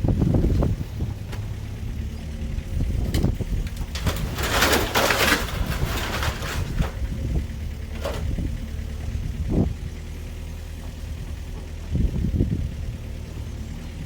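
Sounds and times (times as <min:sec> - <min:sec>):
engine running at low speed: 0:00.0 - 0:14.0
rustling scraping noise: 0:03.9 - 0:07.2.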